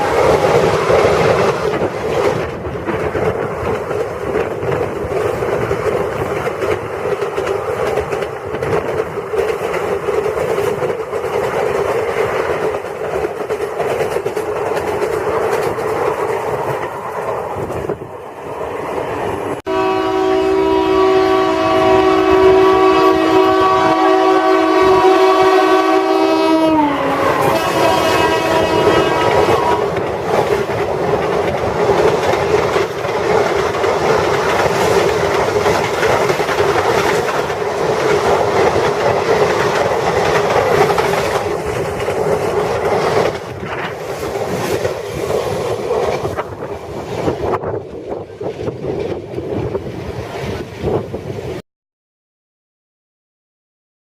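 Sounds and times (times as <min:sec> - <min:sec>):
train wheels clickety-clack: 0:00.0 - 0:18.2, 0:27.1 - 0:51.6
locomotive horn: 0:19.7 - 0:30.0.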